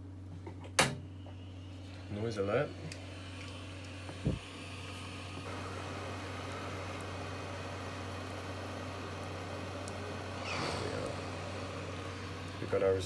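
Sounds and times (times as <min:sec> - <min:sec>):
hot air blowing hiss: 0:04.0 - 0:13.0.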